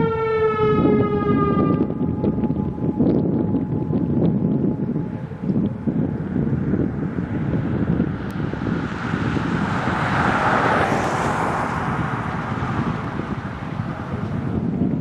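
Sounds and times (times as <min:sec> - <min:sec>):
wind buffeting microphone: 0:00.0 - 0:15.0
vehicle passing: 0:04.6 - 0:15.0.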